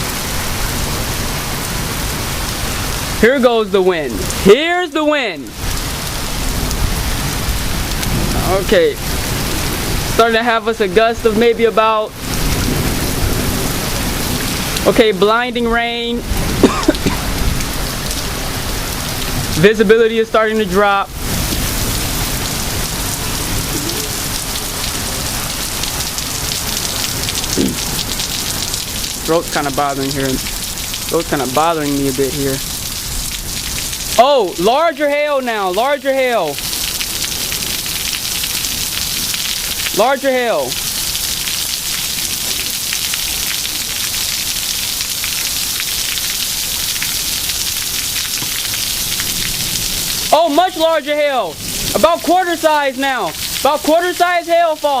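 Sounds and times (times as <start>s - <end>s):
heavy rain pouring: 0.0s - 55.0s
strong wind gusts: 5.5s - 19.6s, 21.0s - 29.2s.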